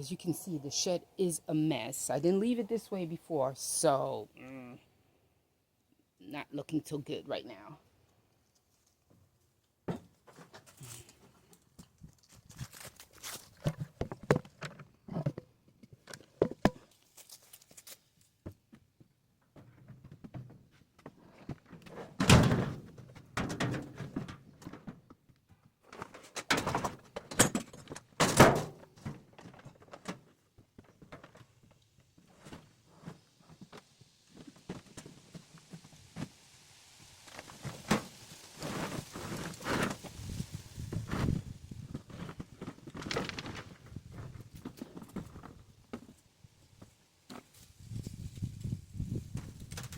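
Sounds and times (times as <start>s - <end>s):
objects knocking and thudding: 13.6s - 16.9s
faint steady hiss: 29.0s - 42.7s.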